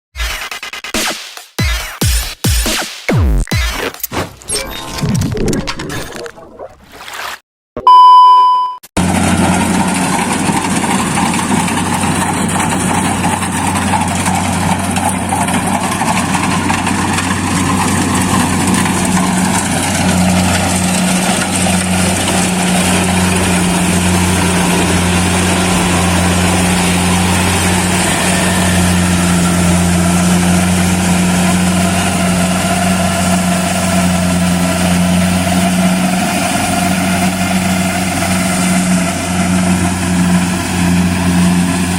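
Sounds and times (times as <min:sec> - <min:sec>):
combine harvester engine drone: 0:09.0 - 0:41.9.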